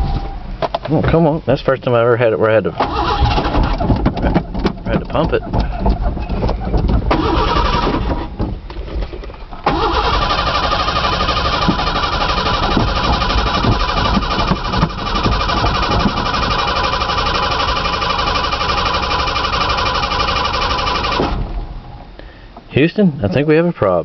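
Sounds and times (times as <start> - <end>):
engine cranking on starter: 2.8 - 8.4, 9.6 - 21.7.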